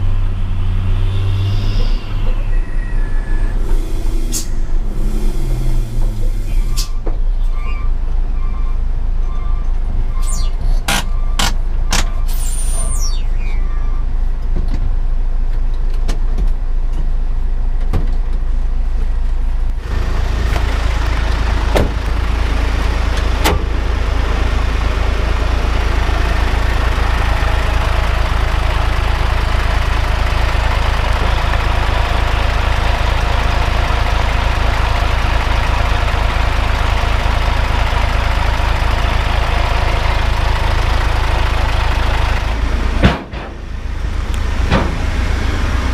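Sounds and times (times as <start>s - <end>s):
rushing noise: 0.0s - 7.0s
truck diesel engine rumbling: 0.0s - 45.9s.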